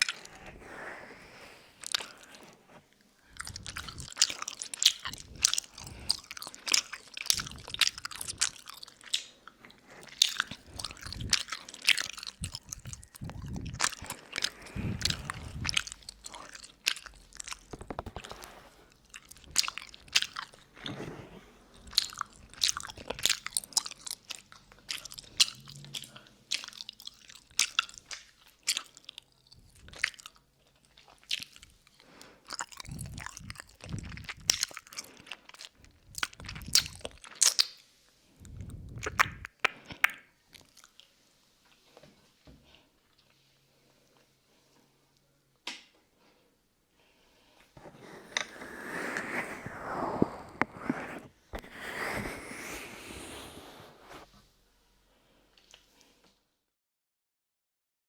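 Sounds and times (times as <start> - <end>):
lollipop sucking mouth sounds: 3.3 - 20.9, 21.7 - 30.3, 32.5 - 37.8, 38.4 - 40.9, 48.0 - 54.3.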